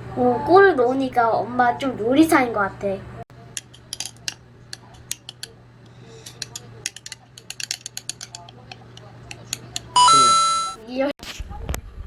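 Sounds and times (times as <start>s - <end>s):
utensil clinking against dishes: 3.5s - 10.0s.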